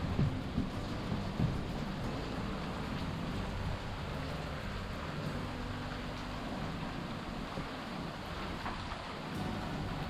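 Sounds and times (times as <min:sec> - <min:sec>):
wind over microphone: 0:00.0 - 0:05.6
water rushing: 0:00.0 - 0:10.0.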